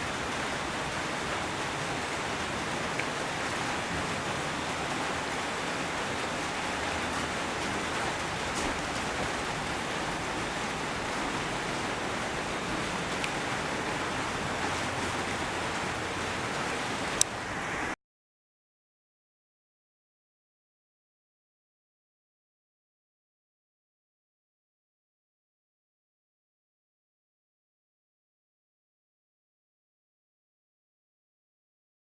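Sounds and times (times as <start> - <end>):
steady rushing hiss: 0.0 - 18.0.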